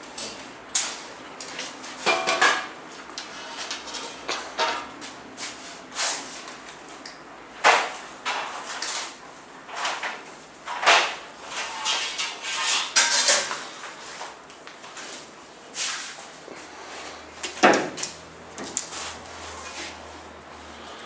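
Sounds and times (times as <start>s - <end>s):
metal profiles clattering and scraping: 10.7s - 13.7s.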